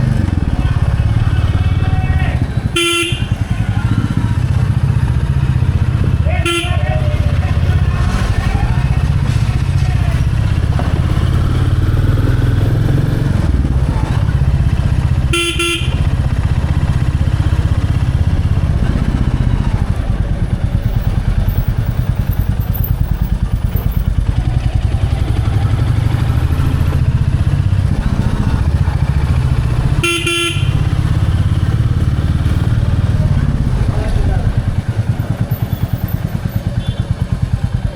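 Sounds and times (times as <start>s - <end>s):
motorcycle engine thumping: 0.0s - 37.9s
horn: 2.8s - 3.4s, 15.3s - 16.1s, 29.9s - 30.9s.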